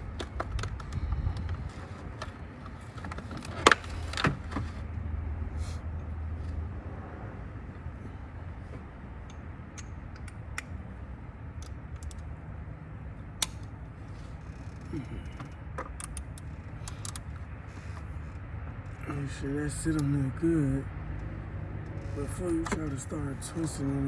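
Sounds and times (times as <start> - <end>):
low background rumble: 0.0 - 24.0
oil filter parts clicking: 9.1 - 10.9, 13.2 - 19.0.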